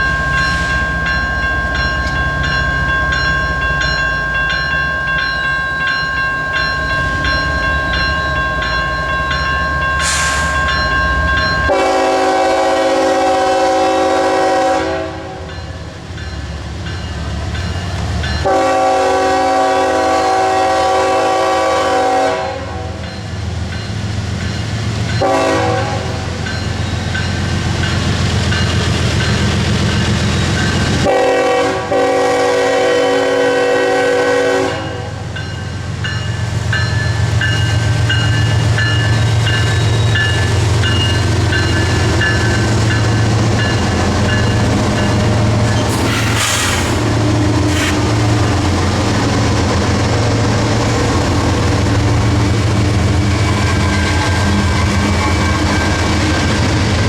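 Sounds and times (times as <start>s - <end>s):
locomotive horn blasts: 11.7s - 15.5s, 18.4s - 23.0s, 25.2s - 26.3s, 31.0s - 35.2s.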